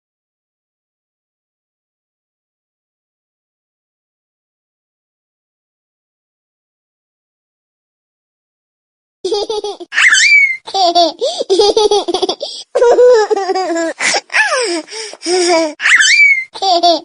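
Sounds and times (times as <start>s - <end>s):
baby giggling and squealing: 9.3s - 17.0s.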